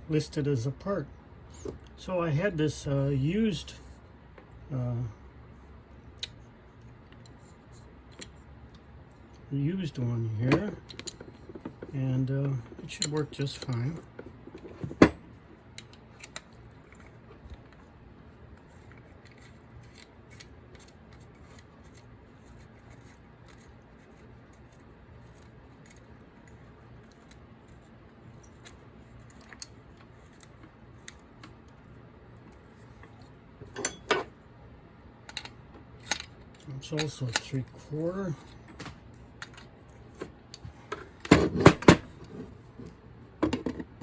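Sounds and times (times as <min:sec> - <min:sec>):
faint steady hum: 0:00.0 - 0:44.0
metallic clicks of tools handled: 0:33.7 - 0:34.3, 0:35.3 - 0:37.8.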